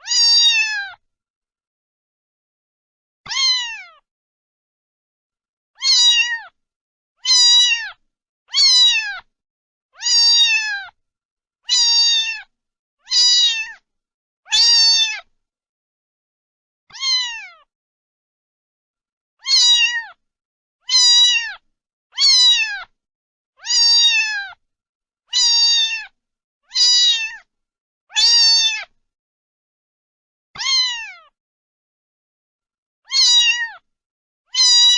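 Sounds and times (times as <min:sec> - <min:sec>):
cat meowing: 0:00.0 - 0:01.0, 0:03.3 - 0:04.0, 0:05.8 - 0:06.6, 0:07.2 - 0:09.3, 0:10.0 - 0:11.0, 0:11.7 - 0:13.8, 0:14.5 - 0:15.3, 0:16.9 - 0:17.7, 0:19.4 - 0:20.2, 0:20.9 - 0:21.6, 0:22.2 - 0:22.9, 0:23.6 - 0:24.6, 0:25.3 - 0:27.5, 0:28.1 - 0:28.9, 0:30.6 - 0:31.4, 0:33.1 - 0:33.8, 0:34.5 - 0:34.9.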